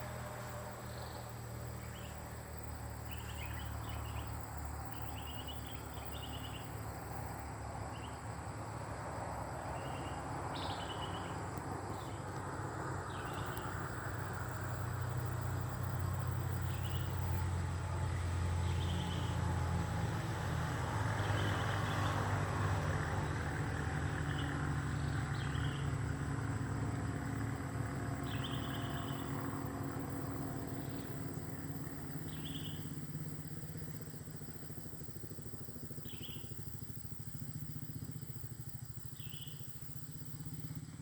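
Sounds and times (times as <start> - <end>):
bird chirping: 0.8 - 6.8, 9.7 - 12.2, 13.1 - 13.9, 16.2 - 17.4, 28.2 - 33.1, 36.0 - 37.5, 38.2 - 40.6.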